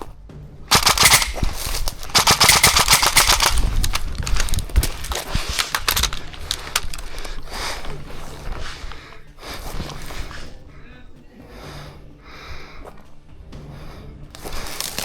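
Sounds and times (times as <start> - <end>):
airsoft rifles firing: 0.7 - 7.4.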